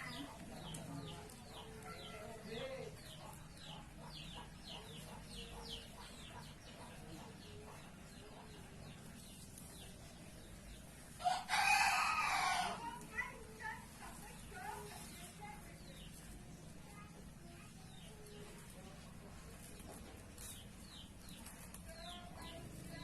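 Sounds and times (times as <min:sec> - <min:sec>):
birds chirping: 0:00.0 - 0:23.0.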